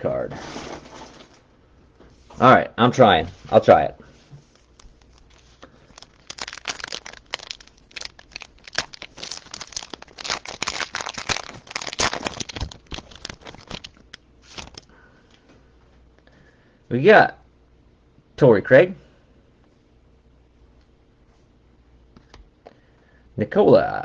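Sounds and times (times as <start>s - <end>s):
wrapper crinkling and tearing: 4.5s - 14.9s.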